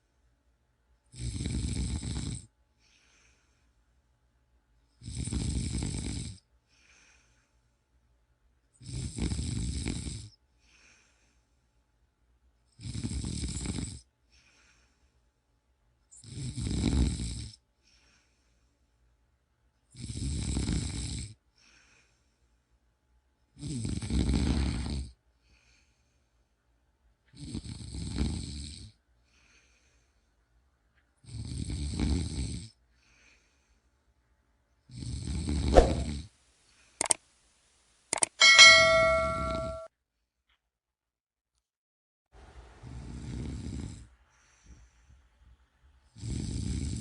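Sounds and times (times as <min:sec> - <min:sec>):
loud snoring: 0:01.1 - 0:02.5, 0:05.0 - 0:06.4, 0:08.8 - 0:10.3, 0:12.8 - 0:14.0, 0:16.2 - 0:17.6, 0:19.9 - 0:21.4, 0:23.6 - 0:25.2, 0:27.4 - 0:28.9, 0:31.2 - 0:32.7, 0:34.9 - 0:36.2, 0:42.8 - 0:44.1, 0:46.2 - 0:47.0
faint breath: 0:02.8 - 0:03.8, 0:06.6 - 0:08.0, 0:10.5 - 0:11.9, 0:14.2 - 0:15.4, 0:17.8 - 0:19.0, 0:21.5 - 0:22.7, 0:25.4 - 0:26.6, 0:29.2 - 0:30.6, 0:32.9 - 0:34.2, 0:44.2 - 0:45.5.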